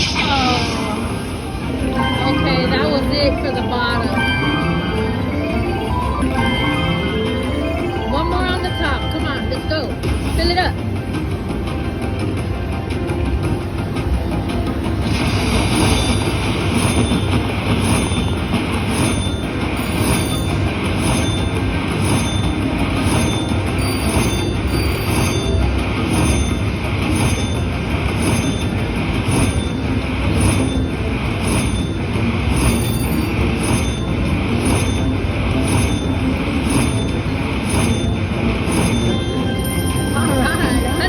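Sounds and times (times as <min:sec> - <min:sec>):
slot machine sound effects: 0:00.0 - 0:41.0.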